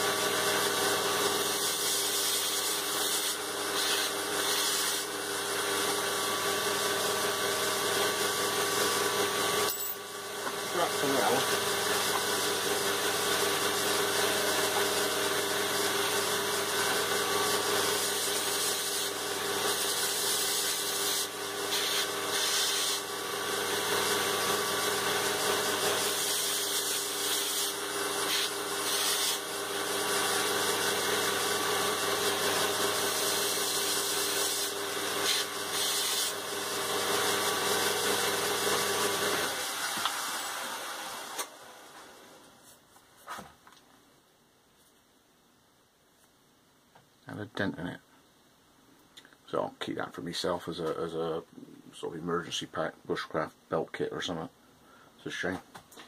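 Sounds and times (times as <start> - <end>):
electric grinder motor hum: 0.0 - 41.5
grinding hiss on metal rod: 1.4 - 5.1, 17.9 - 23.1, 25.3 - 29.5, 33.0 - 36.4.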